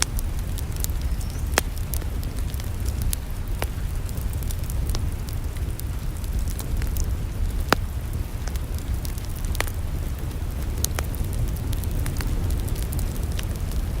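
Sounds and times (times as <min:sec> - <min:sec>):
wood fire crackling and popping: 0:00.0 - 0:14.0.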